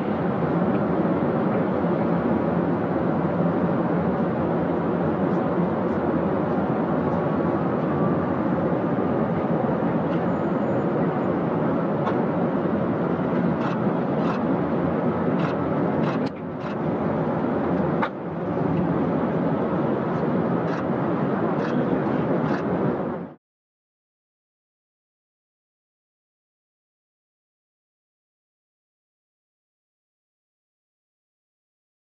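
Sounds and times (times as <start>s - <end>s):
jet engines rumbling: 0.0s - 23.4s.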